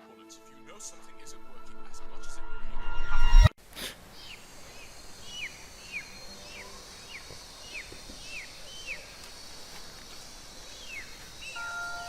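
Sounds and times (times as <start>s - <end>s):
faint outdoor hiss: 3.6s - 12.0s
soft chime-like music: 11.6s - 12.0s.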